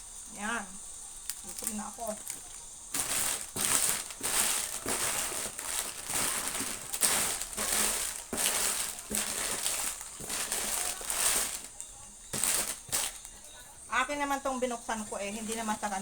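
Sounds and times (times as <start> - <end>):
packaging crinkling and rustling: 1.2 - 13.7.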